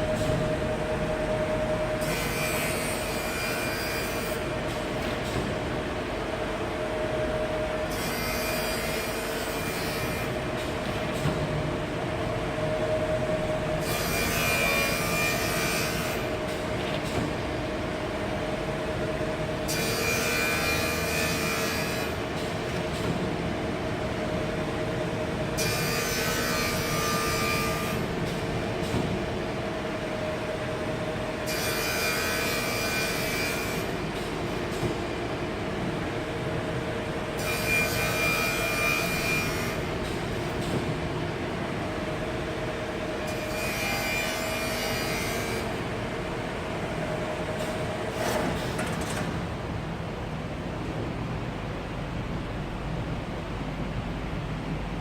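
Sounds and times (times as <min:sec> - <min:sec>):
machine humming: 0:00.0 - 0:03.9.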